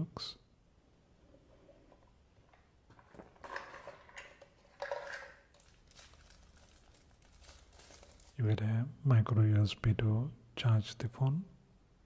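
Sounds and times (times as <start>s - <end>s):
packaging rustling: 2.9s - 8.4s.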